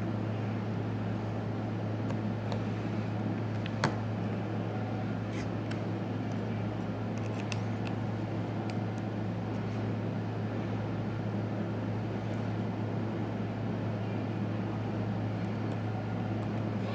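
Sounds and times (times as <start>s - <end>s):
steady low hum: 0.0s - 16.9s.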